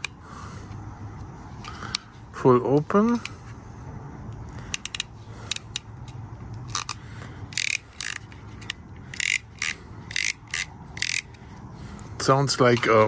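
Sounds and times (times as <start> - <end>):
crimping tool ratchet clicking: 4.7 - 11.4.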